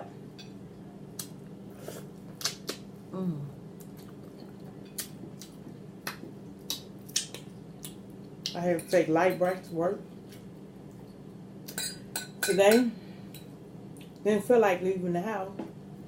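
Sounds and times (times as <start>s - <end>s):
steady low hum: 0.0s - 16.0s
low vocal sound: 3.1s - 3.6s.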